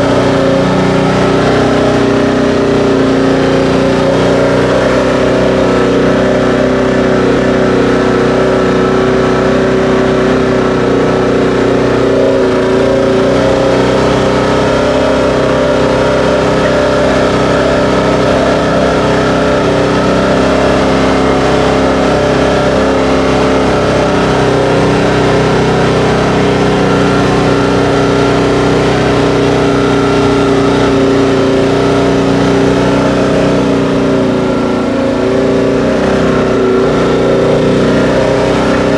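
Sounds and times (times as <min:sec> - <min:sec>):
vehicle engine running steadily: 0:00.0 - 0:38.9.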